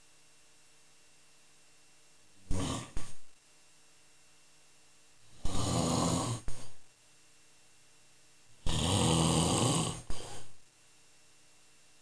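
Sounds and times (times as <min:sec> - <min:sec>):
man snoring: 0:02.4 - 0:03.2, 0:05.3 - 0:06.8, 0:08.6 - 0:10.6.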